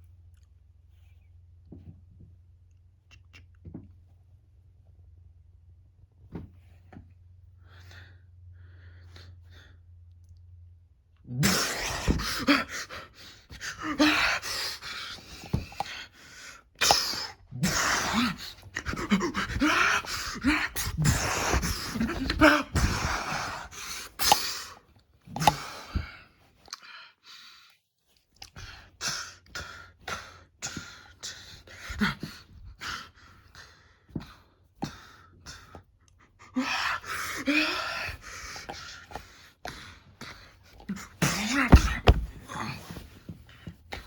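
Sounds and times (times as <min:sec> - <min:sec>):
person breathing hard: 0:11.4 - 0:27.7, 0:28.6 - 0:44.0
strained vocal sounds: 0:16.8 - 0:26.1.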